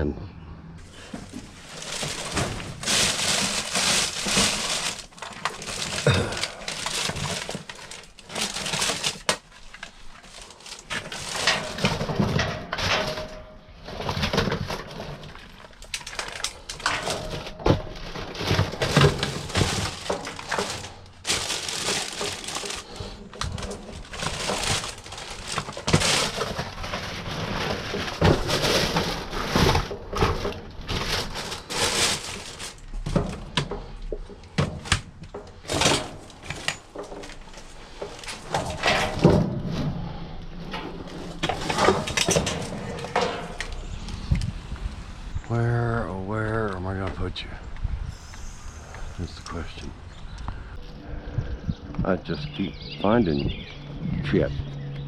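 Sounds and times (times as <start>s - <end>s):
scrap metal scraping and clattering: 0.8s - 44.5s.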